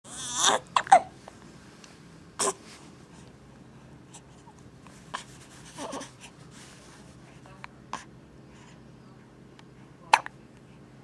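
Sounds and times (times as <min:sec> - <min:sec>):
squeaky hiccups: 0:00.2 - 0:01.1.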